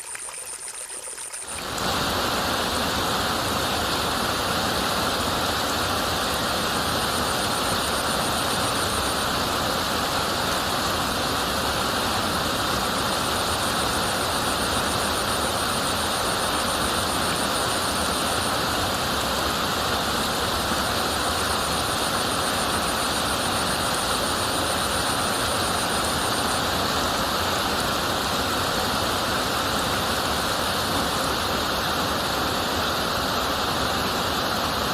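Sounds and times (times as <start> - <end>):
river water rushing: 0.0 - 6.1.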